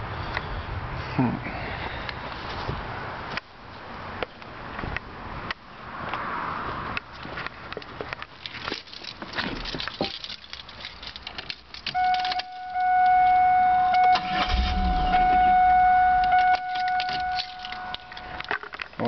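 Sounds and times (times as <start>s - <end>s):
keys jangling: 8.4s - 12.9s, 16.2s - 19.0s
high-pitched car warning tone: 11.9s - 18.5s
car starter cranking: 13.8s - 18.8s.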